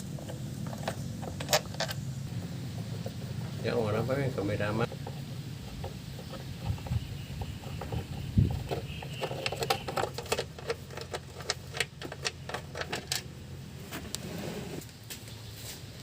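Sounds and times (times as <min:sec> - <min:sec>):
steady low hum: 0:00.0 - 0:16.0
hand tools clicking on metal: 0:04.8 - 0:13.3.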